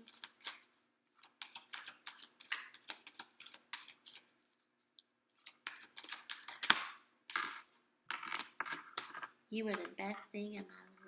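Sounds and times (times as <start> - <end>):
cards being shuffled: 0.1 - 4.3, 5.4 - 7.6.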